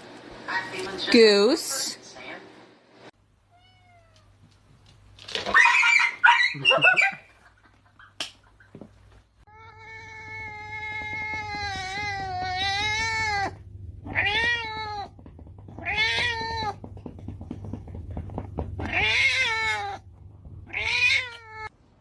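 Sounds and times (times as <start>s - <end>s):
cat yowling and meowing: 9.5s - 15.2s, 15.8s - 16.8s, 18.8s - 20.0s, 20.7s - 21.7s.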